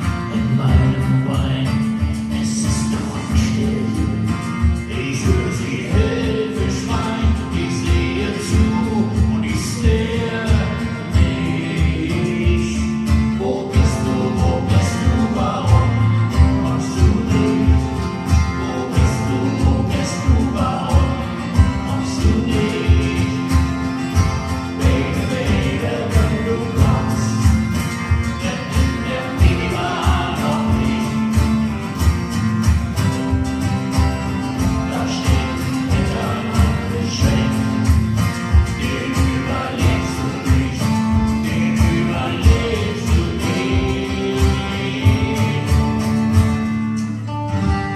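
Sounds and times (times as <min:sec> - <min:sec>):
man singing: 0:00.0 - 0:32.4, 0:34.4 - 0:46.6
guitar: 0:00.0 - 0:47.9
steady beat: 0:15.7 - 0:46.6.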